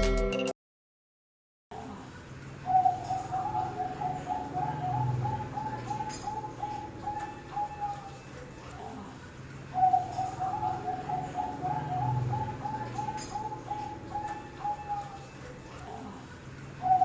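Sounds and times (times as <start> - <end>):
dove cooing: 2.6 - 9.0, 9.7 - 16.1, 16.8 - 17.0.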